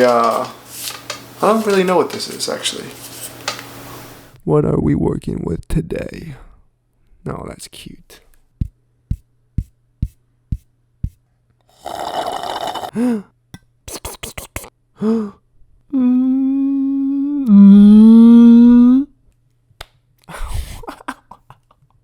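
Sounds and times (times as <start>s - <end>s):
mouth clicks: 13.9s - 14.7s.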